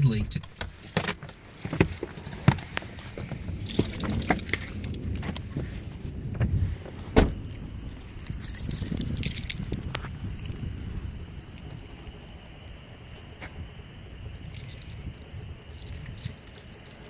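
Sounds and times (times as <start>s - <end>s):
vehicle cabin rumble: 0.0s - 17.0s
small rattles and clicks: 0.5s - 5.5s, 7.5s - 12.0s, 14.5s - 17.0s.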